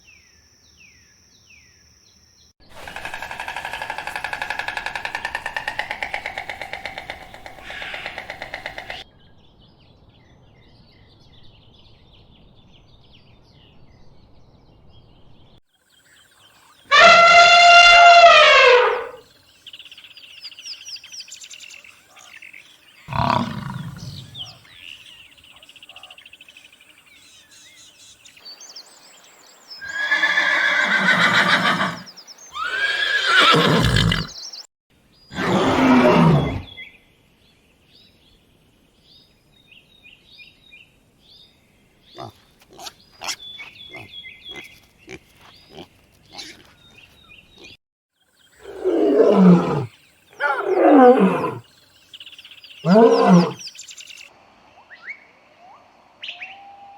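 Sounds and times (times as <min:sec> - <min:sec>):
loud animal calls: 0:02.7 - 0:09.0, 0:16.9 - 0:19.2, 0:23.1 - 0:24.7, 0:29.8 - 0:34.4, 0:35.3 - 0:36.7, 0:48.6 - 0:51.6, 0:52.8 - 0:53.6.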